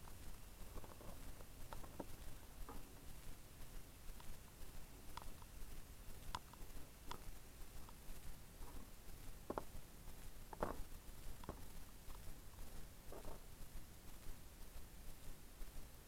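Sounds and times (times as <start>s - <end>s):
birds pecking seed taps: 9.4s - 9.8s, 10.5s - 12.2s.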